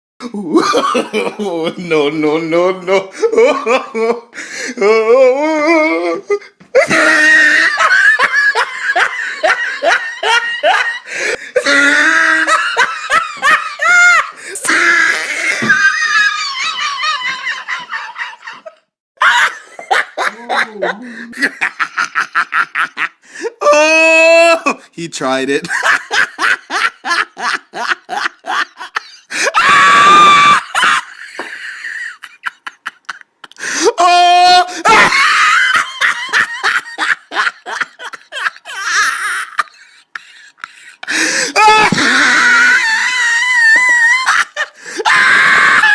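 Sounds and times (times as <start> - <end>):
hysterical laughter: 0.4 - 1.8, 3.1 - 23.2, 25.7 - 45.9
wheezy breaths: 4.3 - 4.8, 11.0 - 11.8, 33.5 - 33.9, 39.8 - 41.6, 44.7 - 45.1
high-pitched shrieking laugh: 6.8 - 20.8, 27.1 - 33.2, 34.0 - 40.2, 41.5 - 45.9
person laughing in high bursts: 6.8 - 23.2.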